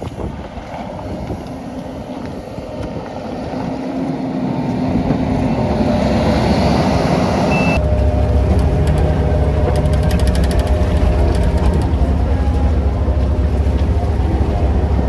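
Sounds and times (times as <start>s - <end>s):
heavy machine engine rumbling: 0.9s - 15.0s
quick ticks: 8.5s - 12.0s.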